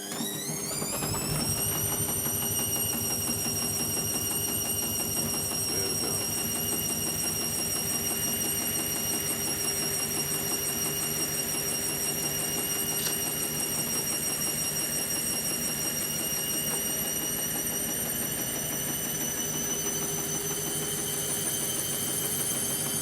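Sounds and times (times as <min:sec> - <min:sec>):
washing machine running: 0:00.0 - 0:23.0.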